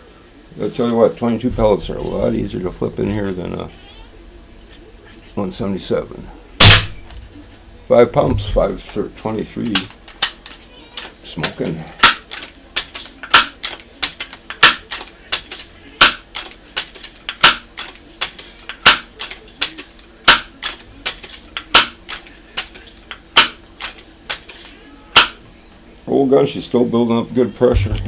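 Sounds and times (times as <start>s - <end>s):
air rifle pump arm clacking: 9.7s - 24.5s.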